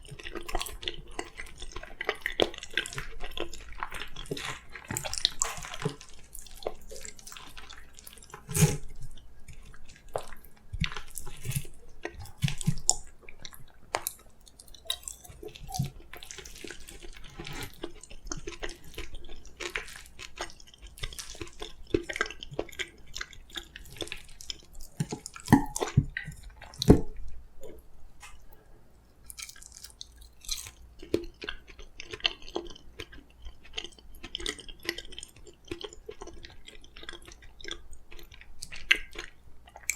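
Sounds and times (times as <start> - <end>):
wet chewing mouth clicks: 29.2 - 39.9.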